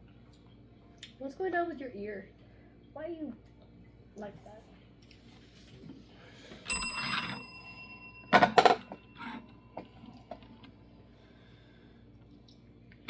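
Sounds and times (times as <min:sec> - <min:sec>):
service bell ringing: 0:06.7 - 0:10.3.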